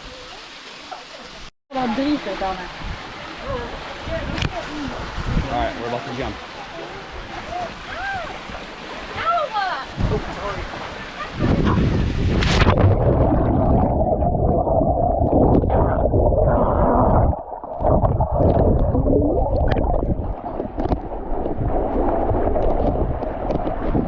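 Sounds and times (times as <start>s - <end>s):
underwater churning and gurgling: 11.4s - 24.0s.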